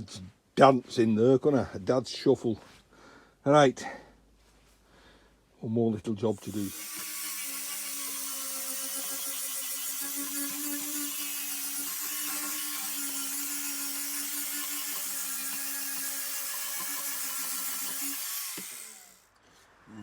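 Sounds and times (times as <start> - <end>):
power tool motor running: 6.4 - 19.2.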